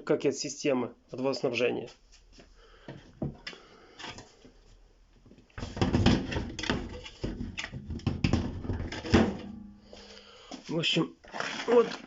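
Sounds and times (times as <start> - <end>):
drawer or lid knocking and rattling: 5.7 - 9.5.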